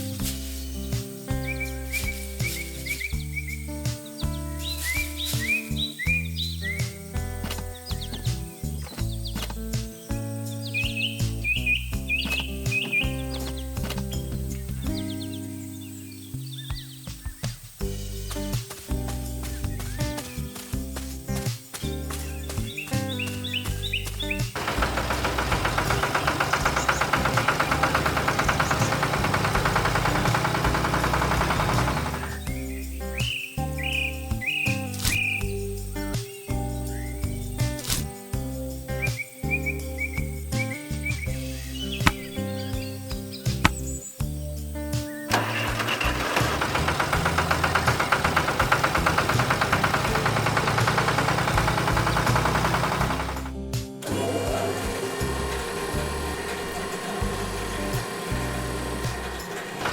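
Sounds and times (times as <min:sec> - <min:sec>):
tractor engine running: 0:00.0 - 0:15.8, 0:17.8 - 0:36.0, 0:40.3 - 0:44.4, 0:45.3 - 0:59.9
engine clattering: 0:21.7 - 0:32.5, 0:45.3 - 0:59.9.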